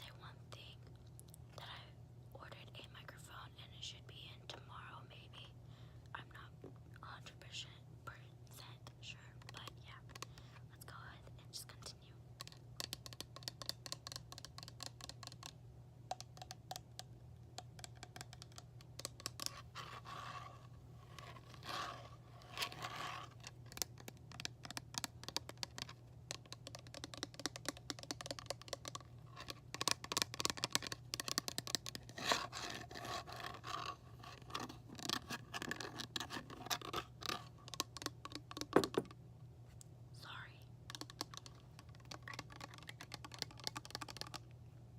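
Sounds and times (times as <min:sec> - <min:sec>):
hands tapping on objects: 0:12.4 - 0:19.7, 0:23.7 - 0:32.5, 0:35.0 - 0:39.2, 0:40.9 - 0:44.4.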